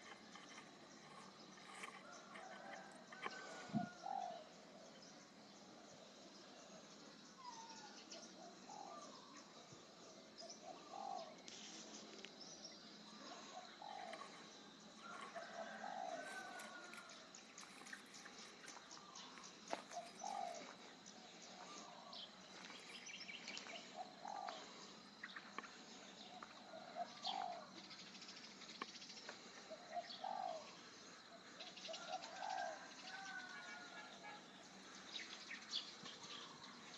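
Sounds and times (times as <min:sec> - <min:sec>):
small birds chirping: 0:00.0 - 0:36.9
dove cooing: 0:08.4 - 0:09.4, 0:10.5 - 0:11.4, 0:13.3 - 0:17.1, 0:19.8 - 0:20.8, 0:23.6 - 0:24.8, 0:26.3 - 0:27.8, 0:29.7 - 0:30.8.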